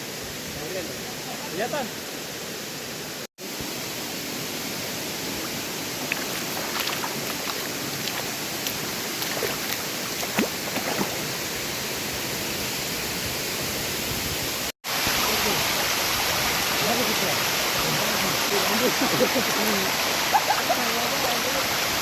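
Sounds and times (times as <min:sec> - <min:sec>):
waterfall rushing: 0:00.0 - 0:14.0, 0:14.8 - 0:22.0
water splashes: 0:04.4 - 0:11.8.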